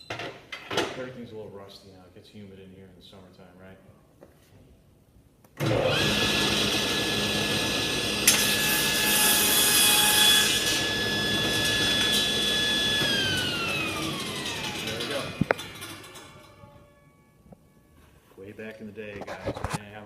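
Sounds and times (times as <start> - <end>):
saw blade cutting board: 5.6 - 16.4
table saw whining: 5.6 - 17.4.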